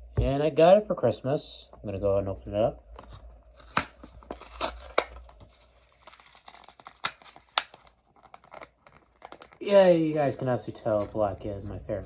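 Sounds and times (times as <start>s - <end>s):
plastic blister crinkling: 3.0s - 11.3s
cardboard tearing: 3.5s - 9.6s.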